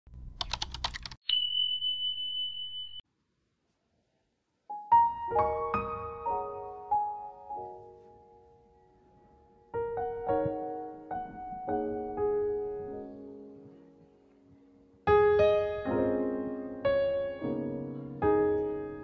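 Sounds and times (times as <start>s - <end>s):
soft piano music: 4.7s - 19.0s.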